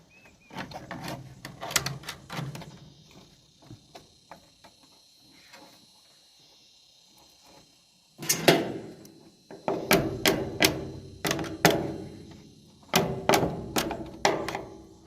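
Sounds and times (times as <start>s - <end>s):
bamboo poles knocking and clattering: 9.5s - 12.1s, 12.9s - 15.0s.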